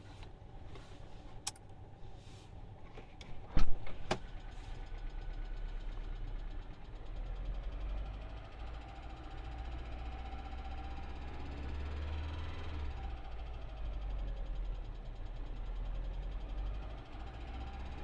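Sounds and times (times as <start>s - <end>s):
car engine running with ticking: 0.0s - 18.0s.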